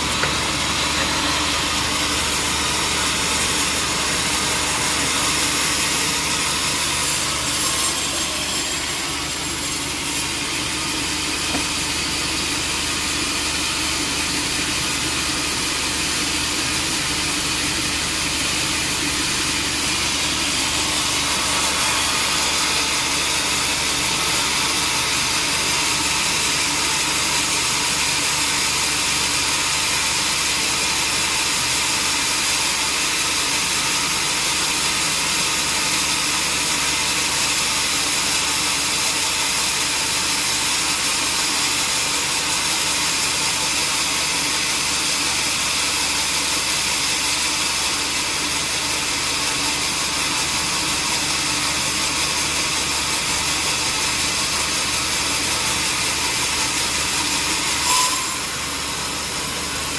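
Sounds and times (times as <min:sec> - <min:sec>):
sawmill saw whirring: 0:00.0 - 0:59.9.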